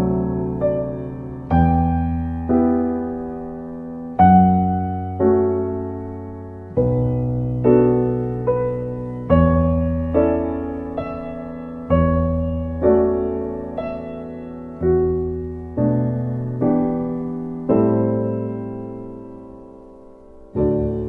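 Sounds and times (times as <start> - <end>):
gentle solo piano music: 0.0 - 21.0.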